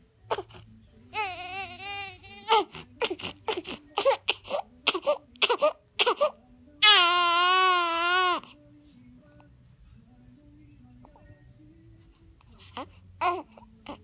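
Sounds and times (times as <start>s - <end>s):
baby crying: 0.3s - 8.5s, 12.7s - 14.0s.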